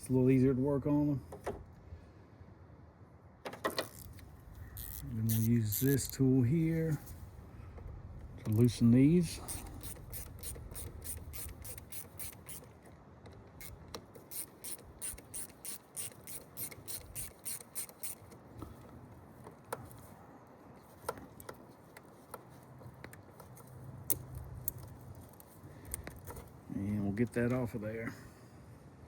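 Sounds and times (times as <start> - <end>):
ratchet wrench clicking: 3.8 - 6.2, 9.4 - 12.7, 13.6 - 18.4.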